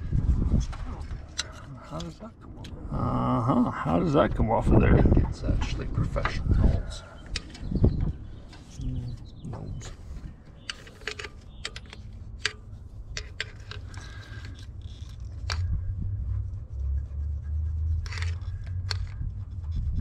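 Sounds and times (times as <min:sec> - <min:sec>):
low rumble: 0:00.0 - 0:10.7, 0:11.4 - 0:20.0
tools clicking and scraping: 0:00.6 - 0:02.8, 0:07.2 - 0:07.8, 0:08.4 - 0:16.5, 0:17.4 - 0:20.0.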